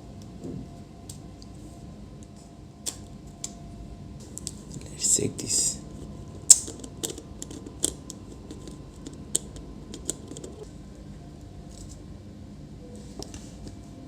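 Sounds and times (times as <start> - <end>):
small hard parts clicking: 6.5 - 10.7.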